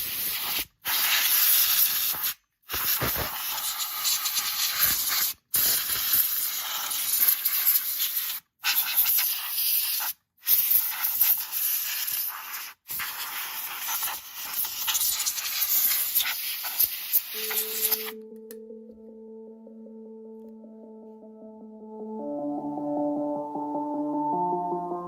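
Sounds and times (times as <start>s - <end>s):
high-pitched hissing noise: 14.8s - 18.2s.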